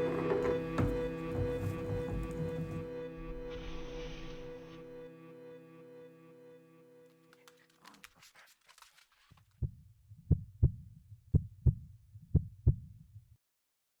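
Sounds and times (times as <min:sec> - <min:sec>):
heartbeat thumps: 0:09.6 - 0:13.1.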